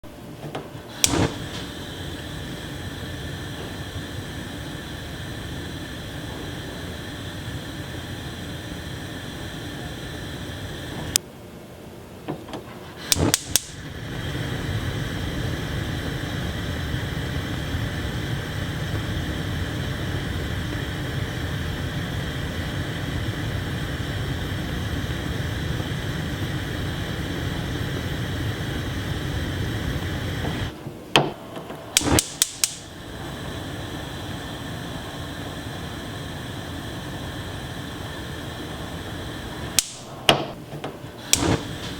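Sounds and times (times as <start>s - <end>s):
gas flame hissing: 0.0s - 11.2s, 12.8s - 41.9s
stove igniter clicks: 0.9s - 5.5s, 13.0s - 14.5s, 31.2s - 33.4s, 39.7s - 41.9s.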